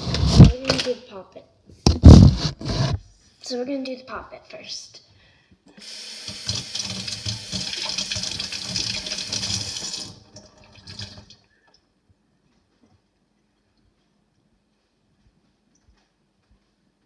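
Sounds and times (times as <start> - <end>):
tap water running and splashing: 5.8 - 11.4.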